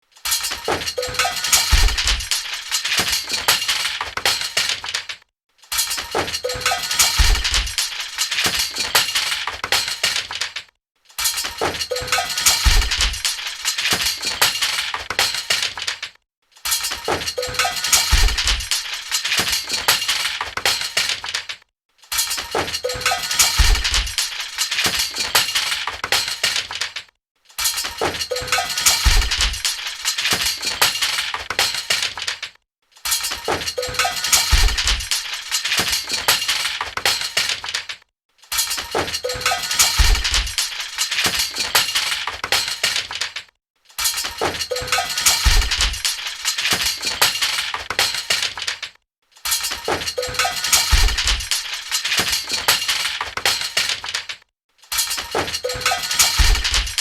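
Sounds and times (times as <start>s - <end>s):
metal clunking and clinking: 0.2s - 10.6s, 11.2s - 21.5s, 27.6s - 32.4s, 33.0s - 37.9s, 44.0s - 57.0s.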